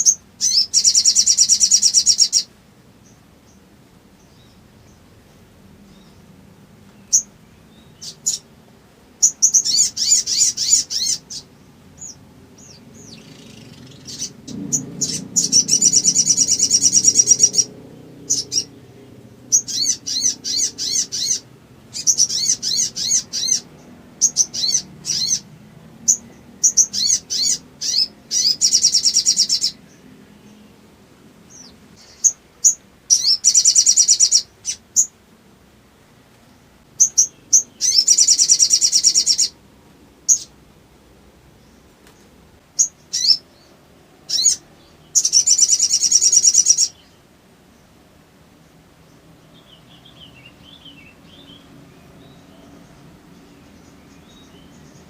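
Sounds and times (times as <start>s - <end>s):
songbird trilling: 0.0s - 3.6s, 7.0s - 8.5s, 9.2s - 30.7s, 31.5s - 35.2s, 37.0s - 39.6s, 40.3s - 40.6s, 42.8s - 43.7s, 44.3s - 47.2s.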